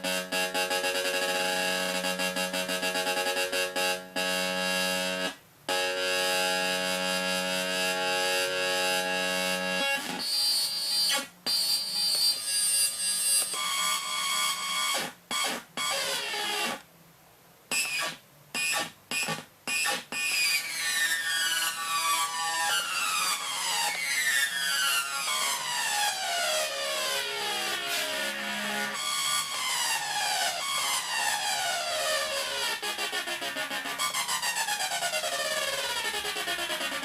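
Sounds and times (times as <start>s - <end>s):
steady low buzzing tone: 0.0s - 10.1s.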